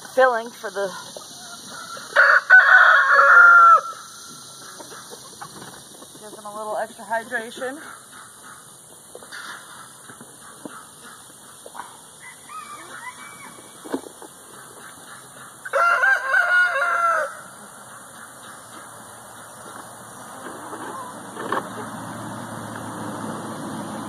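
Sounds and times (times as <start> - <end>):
hens clucking: 0.2 - 22.9
rooster crowing: 1.4 - 4.1, 12.2 - 13.8, 15.6 - 17.6.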